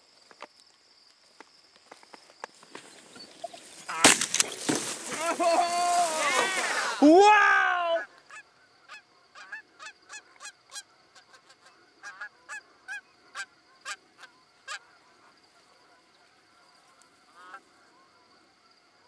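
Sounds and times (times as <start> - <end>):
goose honking: 8.3 - 15.7, 16.6 - 18.0.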